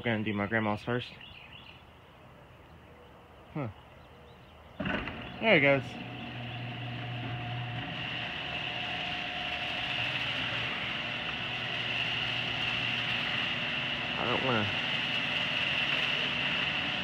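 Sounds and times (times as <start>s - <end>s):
garage door opener motor: 4.8s - 17.0s.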